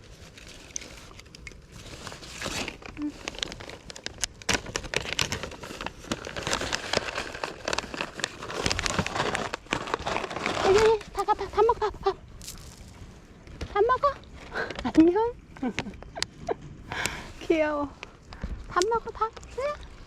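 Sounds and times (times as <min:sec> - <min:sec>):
packaging crinkling: 0:00.0 - 0:13.0.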